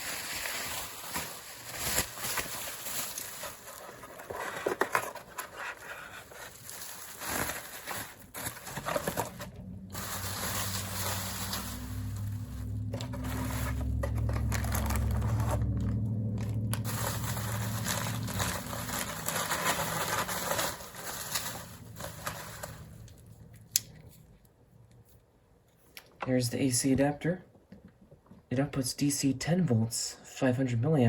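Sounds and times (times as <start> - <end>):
plastic packaging crinkling: 0.0 - 24.1
low steady hum: 1.0 - 31.0.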